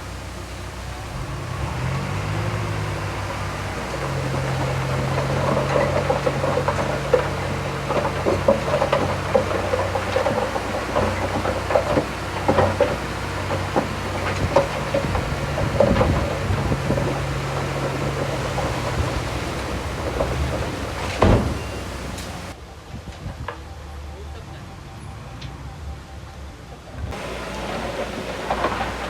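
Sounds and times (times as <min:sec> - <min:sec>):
bulldozer diesel engine running: 0:00.0 - 0:22.6, 0:26.5 - 0:29.0
metallic clanks and knocks: 0:03.2 - 0:22.6, 0:27.1 - 0:29.0.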